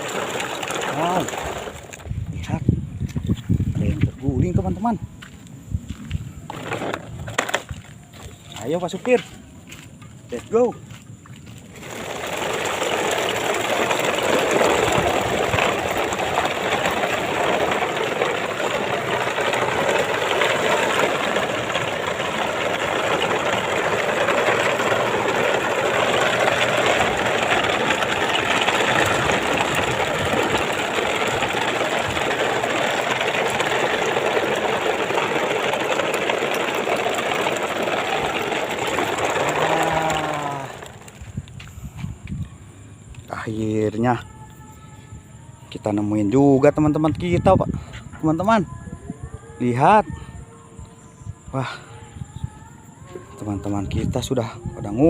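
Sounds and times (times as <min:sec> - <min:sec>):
toy trucks whirring and grinding: 0:00.0 - 0:02.2, 0:06.4 - 0:08.5, 0:11.7 - 0:41.7.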